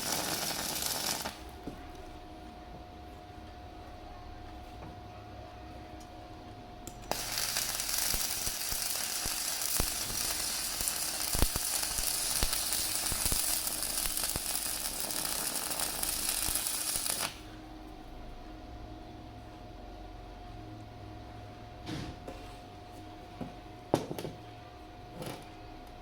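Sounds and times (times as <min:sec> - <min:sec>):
arc welding crackling hiss: 0:00.0 - 0:02.0, 0:06.9 - 0:17.5.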